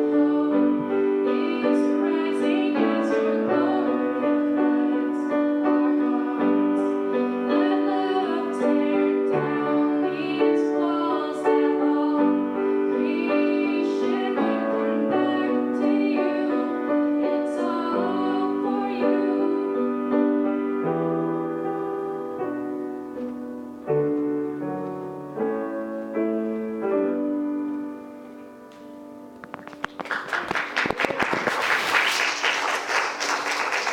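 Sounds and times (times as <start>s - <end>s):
woman singing: 0.0s - 20.4s
piano chords: 0.0s - 30.9s.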